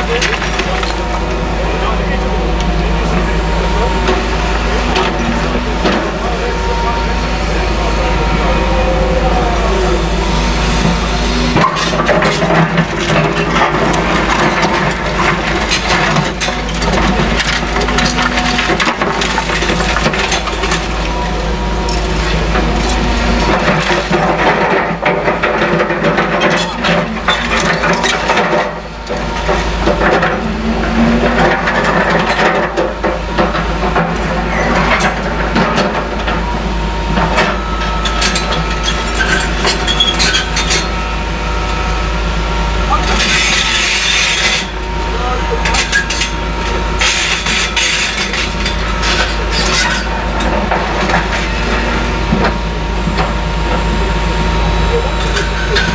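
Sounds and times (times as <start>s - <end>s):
rubble cracking and crunching: 0.0s - 1.2s, 11.5s - 36.2s
excavator diesel drone: 0.0s - 55.9s.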